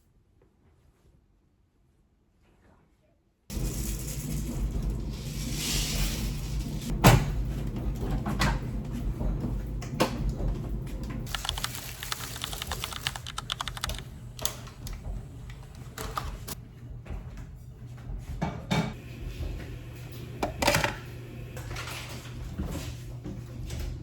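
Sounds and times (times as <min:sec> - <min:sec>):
computer keyboard typing: 0:11.3 - 0:14.7.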